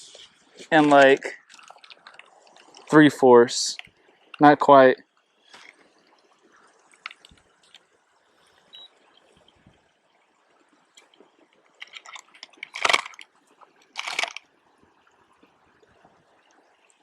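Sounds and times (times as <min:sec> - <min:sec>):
water splashes: 0:00.0 - 0:17.0
small splashy clicks: 0:06.8 - 0:07.9, 0:11.8 - 0:14.5.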